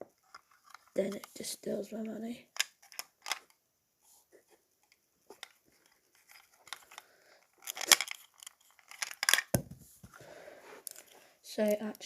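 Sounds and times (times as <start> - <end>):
plastic bricks clicking and rattling: 6.2 - 9.7.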